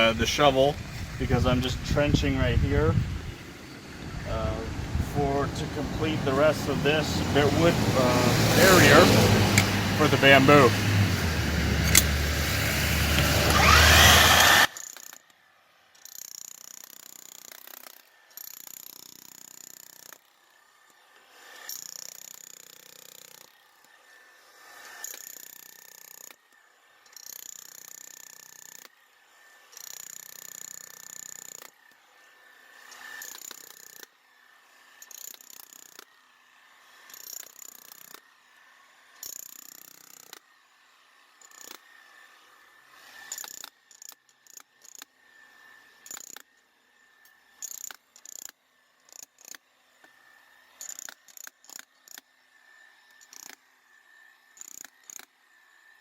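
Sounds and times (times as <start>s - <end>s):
shovel scraping into soil: 4.3s - 14.8s.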